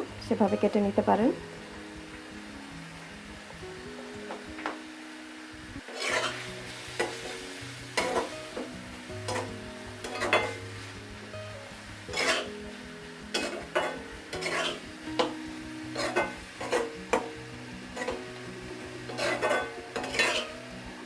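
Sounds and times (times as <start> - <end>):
light sizzle from pan: 0.0 - 21.0
soft background music: 0.0 - 21.0
spatula scraping a pan: 5.9 - 8.4, 9.3 - 11.0, 12.1 - 12.6, 13.3 - 18.2, 19.1 - 20.6.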